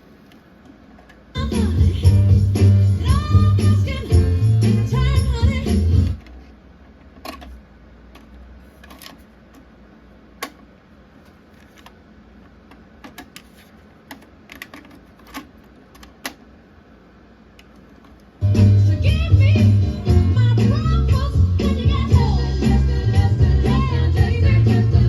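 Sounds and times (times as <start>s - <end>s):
music from cassette deck: 1.4s - 6.2s, 18.4s - 25.0s
cassette deck mechanical clicks: 10.4s - 12.0s, 12.7s - 16.5s.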